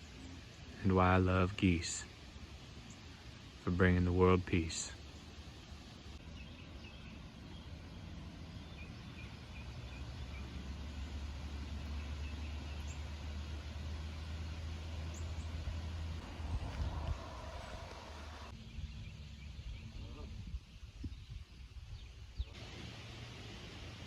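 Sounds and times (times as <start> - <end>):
steady low rumble: 0.8 - 19.0.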